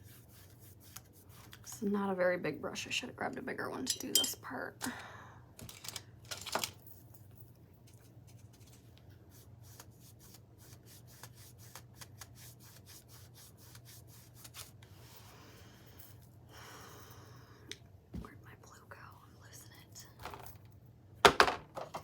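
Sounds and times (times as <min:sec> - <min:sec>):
paintbrush strokes: 0:00.0 - 0:01.8, 0:08.0 - 0:15.2.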